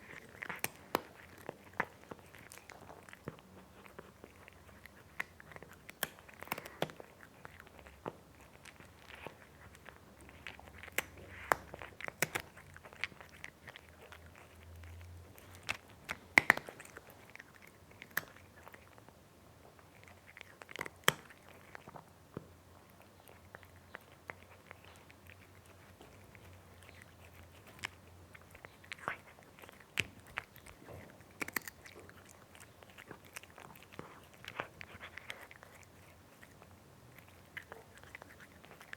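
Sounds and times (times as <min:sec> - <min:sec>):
cat chewing food crunches: 0:00.0 - 0:38.9.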